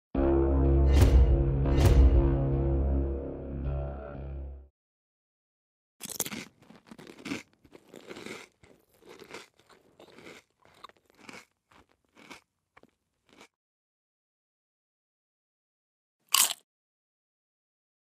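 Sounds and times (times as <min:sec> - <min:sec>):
potato chips being crunched: 0:06.0 - 0:13.4, 0:16.3 - 0:16.6.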